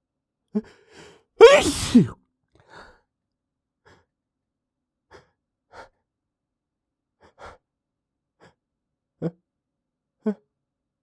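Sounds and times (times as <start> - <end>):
man gasping breaths: 1.4 - 2.1.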